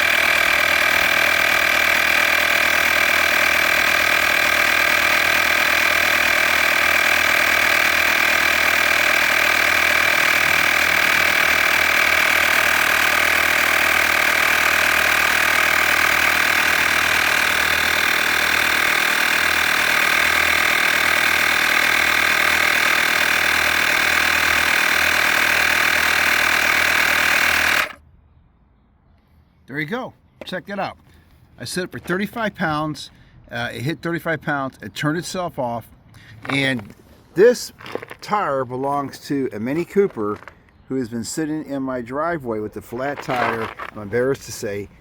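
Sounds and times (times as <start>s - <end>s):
tire inflator pumping: 0.0s - 28.0s, 36.1s - 41.4s, 42.8s - 45.0s.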